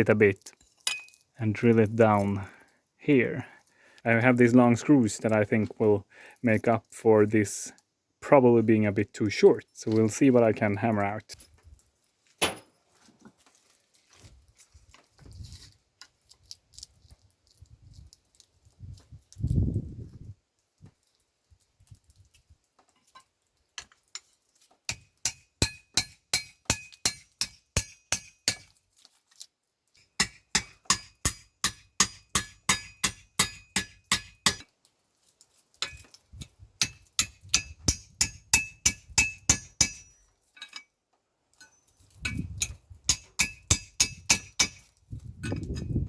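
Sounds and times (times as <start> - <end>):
hammer striking steel on anvil: 12.4 - 12.8, 24.9 - 28.7, 30.2 - 34.6, 36.8 - 40.2, 43.1 - 44.8.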